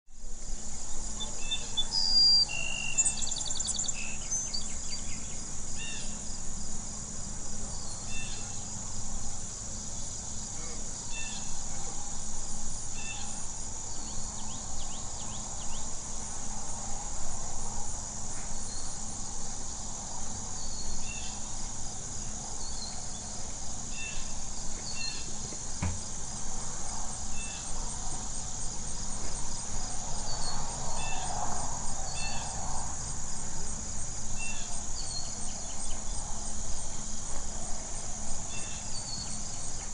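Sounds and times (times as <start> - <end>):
faint low hum: 0.2 - 39.9
insects chirring: 0.2 - 39.9.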